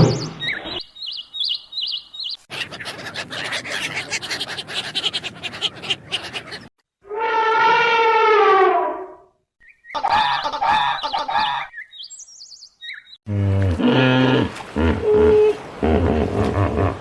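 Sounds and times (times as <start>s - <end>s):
animal calls: 2.5s - 8.7s.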